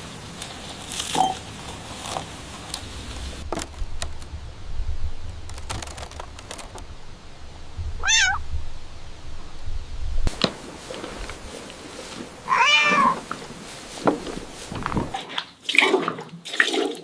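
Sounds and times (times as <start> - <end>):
low rumble: 2.5 - 12.5
cat meowing: 8.0 - 8.4, 12.5 - 13.2.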